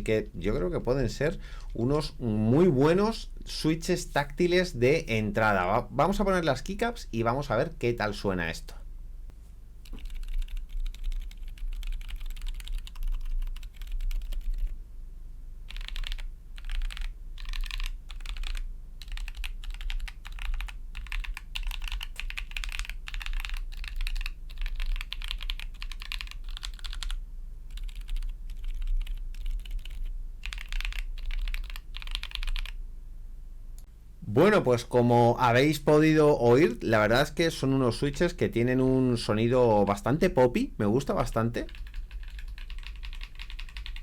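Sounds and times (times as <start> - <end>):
mechanical keyboard typing: 9.9 - 14.8, 15.7 - 32.8, 41.6 - 44.0.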